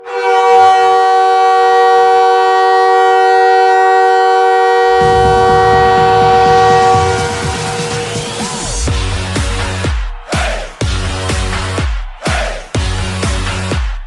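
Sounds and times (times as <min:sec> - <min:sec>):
loud goal horn chord: 0:00.0 - 0:09.5
music: 0:04.9 - 0:14.0.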